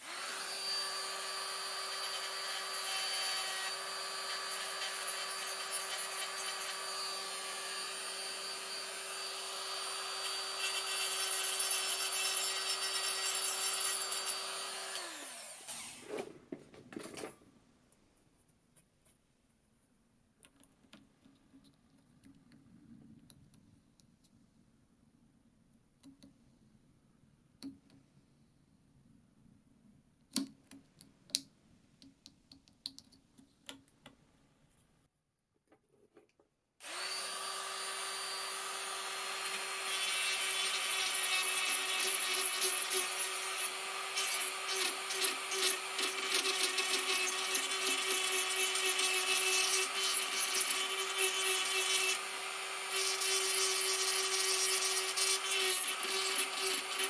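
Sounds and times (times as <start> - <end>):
power tool grinding: 0.0 - 16.1, 36.8 - 57.0
small power tool whining: 0.0 - 16.2, 36.8 - 57.0.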